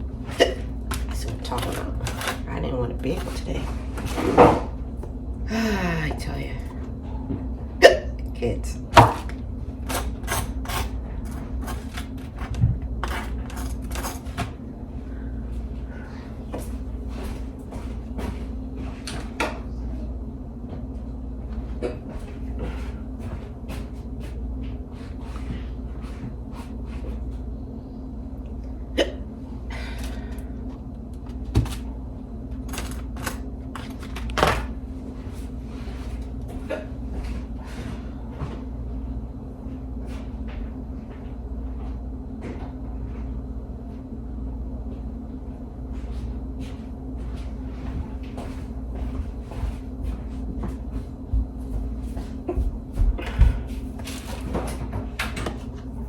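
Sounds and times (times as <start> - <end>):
steady low hum: 0.0 - 56.0
woman hiccuping: 0.4 - 0.7, 7.8 - 8.3, 28.9 - 29.3.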